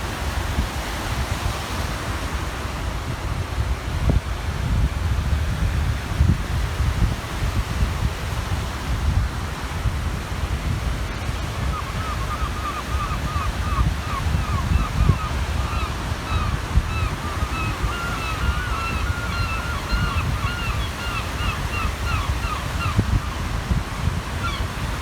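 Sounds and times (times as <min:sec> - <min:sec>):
waves washing on shore: 0:00.0 - 0:25.0
wind rumbling on microphone: 0:00.0 - 0:25.0
water bird calling: 0:11.3 - 0:25.0.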